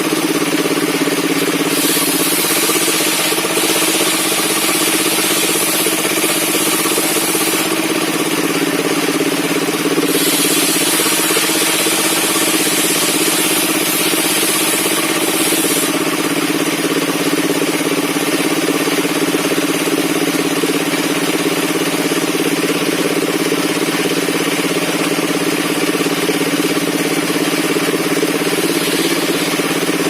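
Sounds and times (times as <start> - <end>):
circular sawmill running: 0.0 - 30.0.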